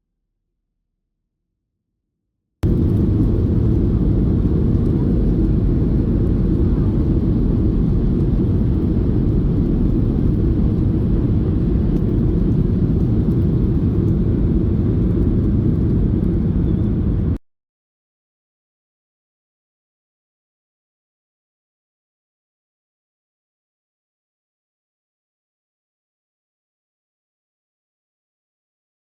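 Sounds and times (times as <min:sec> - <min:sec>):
airplane cabin engine rumble: 0:02.6 - 0:17.4.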